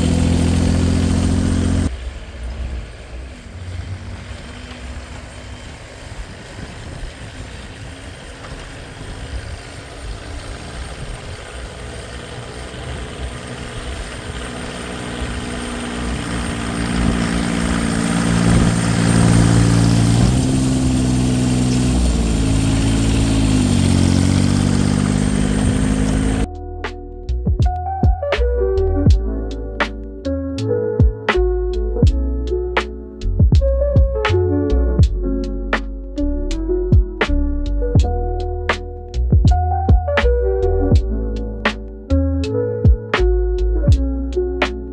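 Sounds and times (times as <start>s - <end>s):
tractor engine pushing snow: 0.0s - 26.5s.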